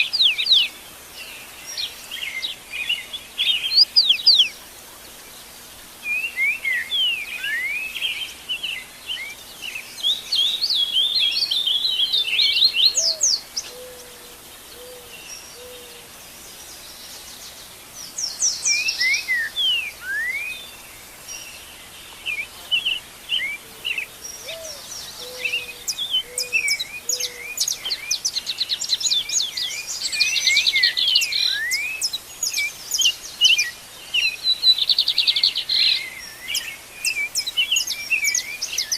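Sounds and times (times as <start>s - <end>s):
birds chirping and trilling: 0.0s - 38.9s
low hooting bird call: 12.0s - 16.1s, 23.6s - 27.7s.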